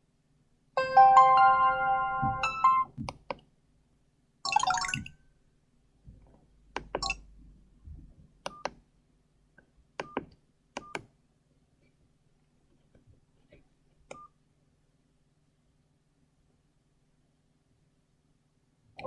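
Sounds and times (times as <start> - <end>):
phone ringtone melody: 0.8 - 2.9.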